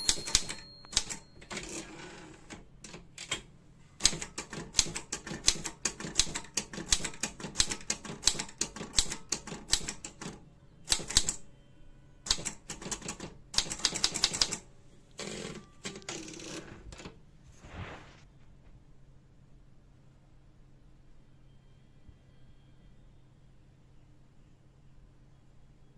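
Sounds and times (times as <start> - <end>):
typewriter key strikes: 0.0 - 1.8
longer noisier typewriter sounds: 0.0 - 11.4, 12.2 - 17.2.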